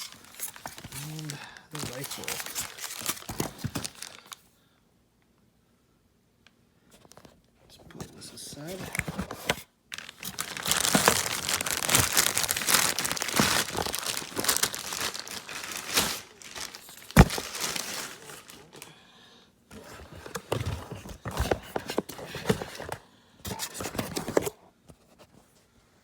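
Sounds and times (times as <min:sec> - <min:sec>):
packaging crinkling and rustling: 0:00.0 - 0:04.4, 0:08.6 - 0:18.9, 0:19.7 - 0:24.6
quiet handling noises: 0:06.9 - 0:09.6.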